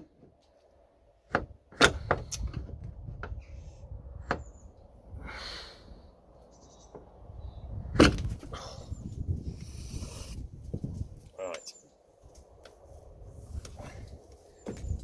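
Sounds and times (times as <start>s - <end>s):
gas strut clicks and knocks: 1.3s - 3.4s.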